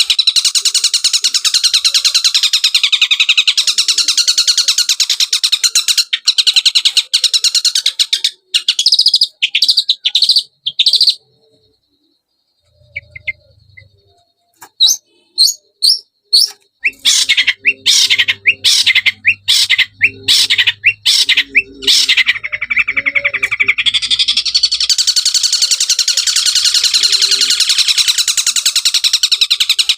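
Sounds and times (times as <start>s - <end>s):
bird buzzy chattering song: 0.0s - 29.9s.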